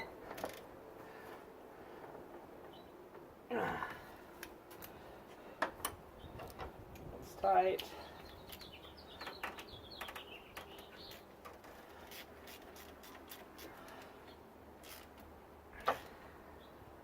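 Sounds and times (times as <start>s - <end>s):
bird chirping: 2.6s - 3.0s, 6.1s - 6.6s, 7.6s - 11.9s, 16.5s - 16.8s.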